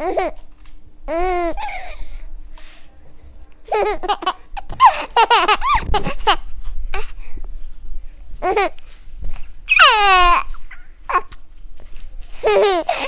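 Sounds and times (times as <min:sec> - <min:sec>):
baby giggling: 0:01.1 - 0:02.0, 0:03.7 - 0:07.1, 0:08.4 - 0:08.8, 0:09.7 - 0:11.3, 0:12.4 - 0:13.0
baby squealing: 0:09.7 - 0:11.3.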